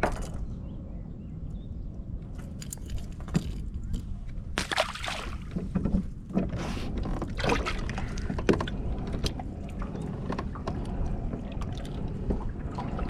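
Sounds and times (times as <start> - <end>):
water sloshing against hull: 2.3 - 13.0
low rumble: 6.9 - 13.0.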